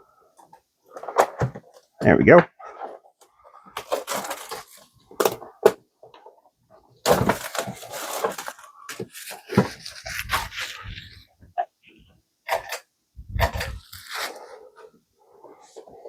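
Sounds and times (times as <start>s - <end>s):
cardboard and plastic tearing: 3.8s - 5.8s, 7.0s - 11.3s, 13.4s - 14.6s.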